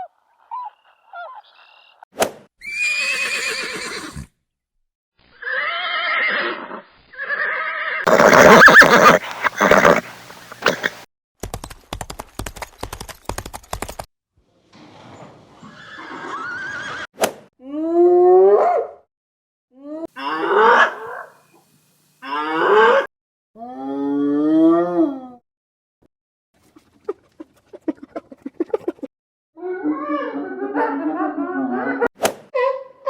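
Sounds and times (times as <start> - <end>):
horse neighing: 2.6 - 4.3, 5.4 - 11.0, 15.5 - 17.1
hooves clip-clopping on hard ground: 8.1 - 14.1.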